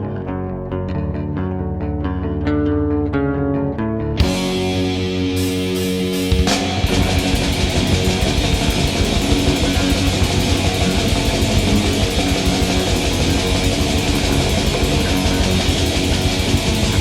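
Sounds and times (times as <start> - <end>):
bass guitar: 0.0 - 17.0
distorted electric guitars: 0.0 - 17.0
fast drumming: 4.2 - 17.0.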